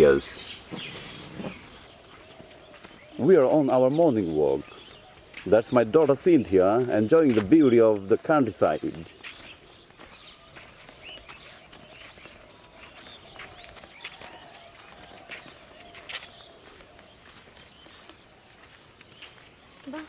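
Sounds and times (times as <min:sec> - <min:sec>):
faint bird chirps: 0:00.0 - 0:05.8.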